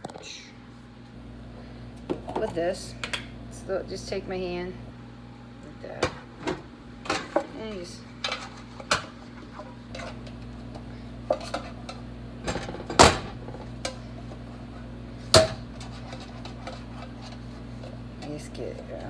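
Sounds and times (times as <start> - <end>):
steady low hum: 0.0 - 19.0
metal baking pan clattering: 11.3 - 14.0.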